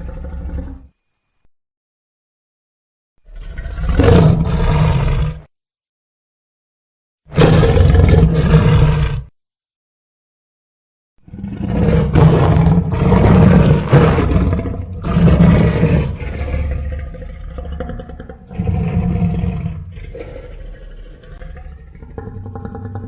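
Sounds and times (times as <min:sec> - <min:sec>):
creature roaring: 0:00.0 - 0:00.9, 0:03.3 - 0:05.5, 0:07.3 - 0:09.3, 0:11.3 - 0:23.0.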